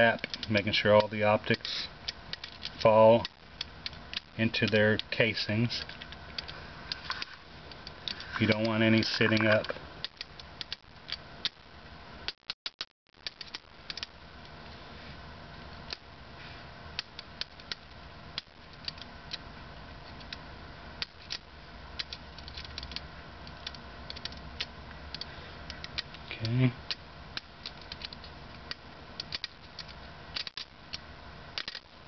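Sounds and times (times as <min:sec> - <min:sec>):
low steady hum: 0:00.0 - 0:12.4, 0:13.1 - 0:32.0
plastic parts clicking: 0:00.2 - 0:05.1, 0:13.2 - 0:14.1, 0:17.0 - 0:19.4, 0:22.0 - 0:31.0, 0:31.6 - 0:31.9.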